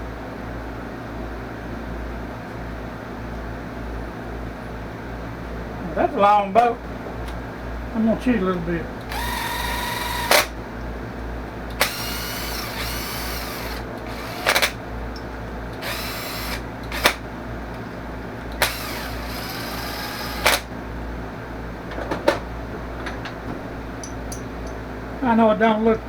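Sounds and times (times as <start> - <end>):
power tool humming: 9.0 - 10.6, 11.7 - 14.8, 15.7 - 17.2, 18.5 - 20.7
sharp metallic clicks: 9.0 - 10.6, 13.6 - 17.2.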